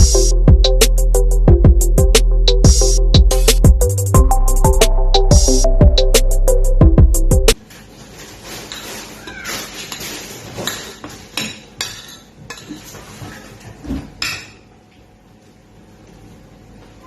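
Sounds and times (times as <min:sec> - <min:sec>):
cutlery and dishes clinking: 0:08.6 - 0:14.7.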